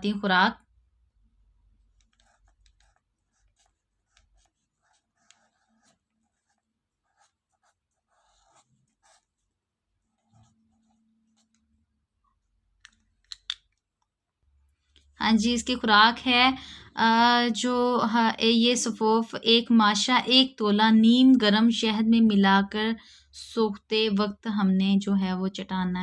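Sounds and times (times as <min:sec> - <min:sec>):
faint scratching and rustling: 0:01.8 - 0:13.0.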